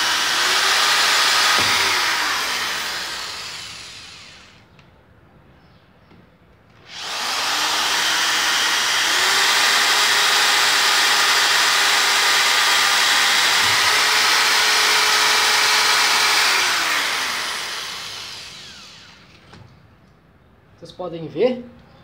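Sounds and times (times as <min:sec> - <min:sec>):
drill bit grinding masonry: 0:00.0 - 0:04.6, 0:06.8 - 0:19.4
drill motor whine: 0:00.0 - 0:04.6, 0:06.8 - 0:19.4.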